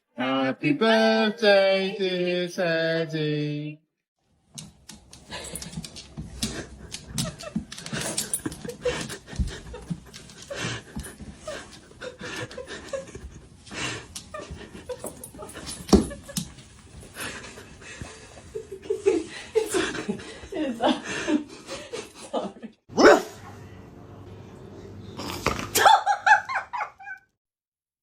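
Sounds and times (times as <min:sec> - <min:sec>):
dog panting: 0:05.2 - 0:15.9.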